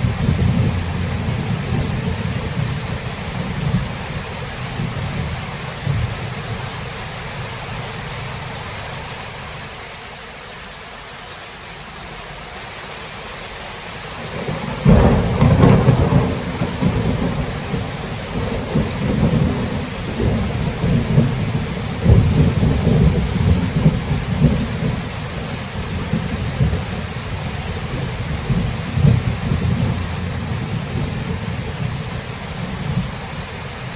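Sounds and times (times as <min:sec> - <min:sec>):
loud thunderclap: 0:00.0 - 0:06.2, 0:14.3 - 0:33.2
rolling thunder: 0:00.0 - 0:06.6, 0:14.3 - 0:33.5
rain hissing: 0:00.0 - 0:33.9.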